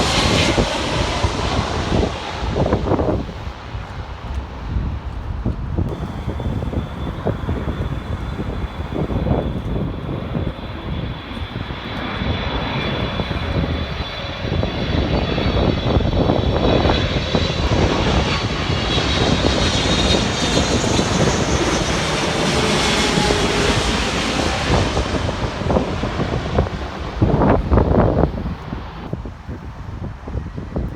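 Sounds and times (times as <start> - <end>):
jet engines passing by: 0.0 - 30.9
wind rumbling on microphone: 0.0 - 30.9.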